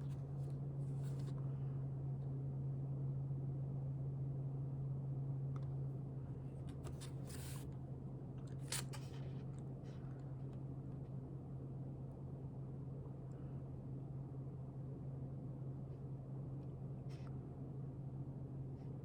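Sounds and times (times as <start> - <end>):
steady low hum: 0.0 - 19.0
paper rustling: 0.9 - 1.3, 6.8 - 7.7, 8.6 - 9.2.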